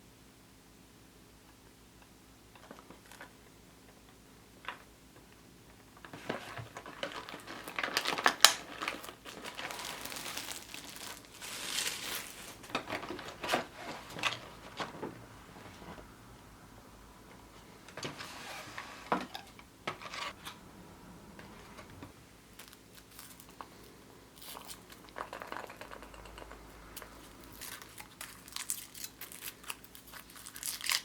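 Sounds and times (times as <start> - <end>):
packaging crinkling and tearing: 6.2 - 15.0, 22.5 - 25.9, 27.0 - 31.0.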